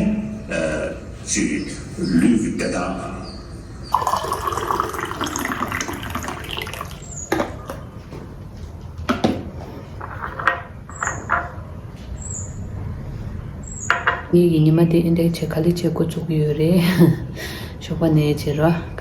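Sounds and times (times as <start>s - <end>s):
tap water running into sink: 4.0s - 7.0s
dishes clinking and knocking: 4.0s - 7.9s, 9.1s - 11.7s, 13.9s - 14.3s.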